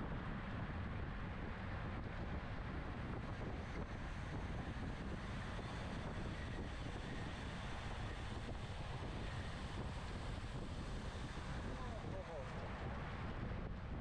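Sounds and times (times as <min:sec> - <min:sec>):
low road and tyre rumble: 0:00.0 - 0:14.0
wind rushing over microphone: 0:00.0 - 0:14.0.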